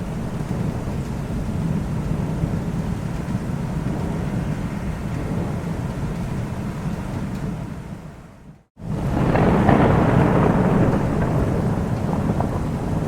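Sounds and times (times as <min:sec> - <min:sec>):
distant thunder rumbling: 0:08.8 - 0:13.0
rain hiss: 0:08.8 - 0:13.0.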